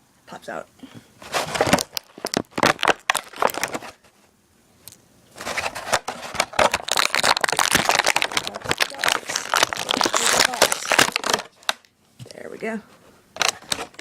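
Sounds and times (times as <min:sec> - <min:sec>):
plastic packaging crinkling: 0:01.3 - 0:04.1, 0:05.4 - 0:11.9, 0:13.4 - 0:14.0.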